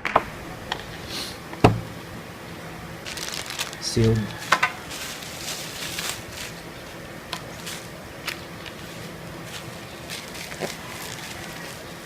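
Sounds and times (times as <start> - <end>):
plastic packaging clicks and rustles: 3.0 - 12.0.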